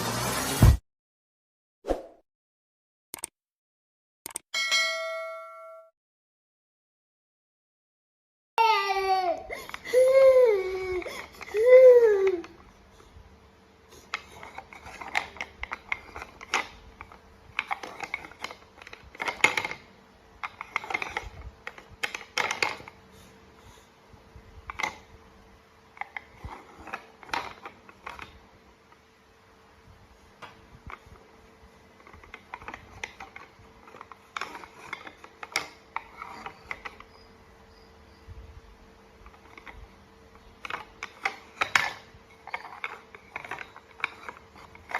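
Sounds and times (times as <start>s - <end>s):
short sounds and clicks: 3.1s - 3.4s, 4.2s - 4.5s
infant crying: 8.6s - 12.5s.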